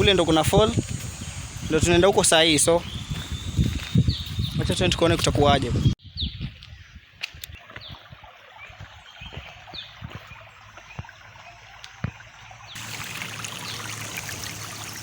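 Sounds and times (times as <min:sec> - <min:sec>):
bird chirps: 0:00.0 - 0:05.0
stream running over rocks: 0:07.6 - 0:15.0.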